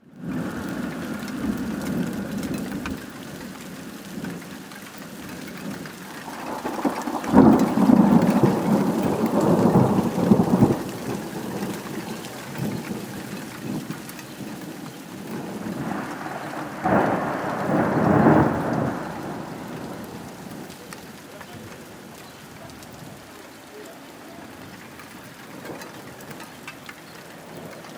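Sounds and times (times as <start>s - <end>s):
rain falling: 0.0s - 27.9s
thunder rumbling: 0.2s - 23.3s.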